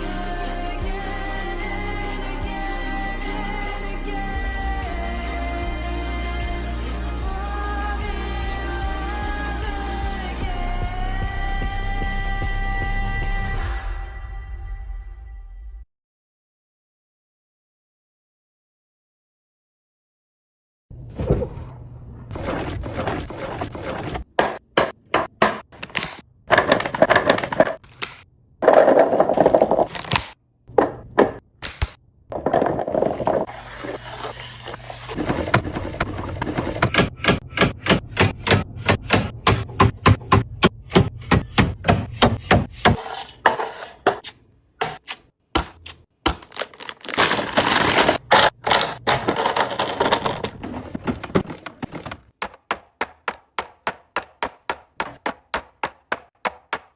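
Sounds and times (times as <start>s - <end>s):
food containers clacking and knocking: 24.4s - 29.9s, 35.1s - 42.1s, 46.3s - 56.9s.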